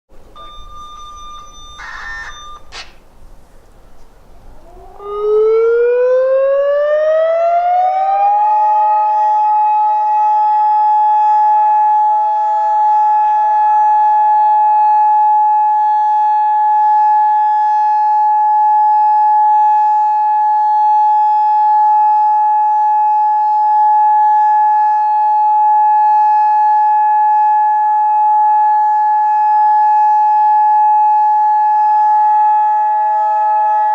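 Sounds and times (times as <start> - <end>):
outdoor warning siren: 0.2 - 33.9
short burst of noise: 0.4 - 5.1.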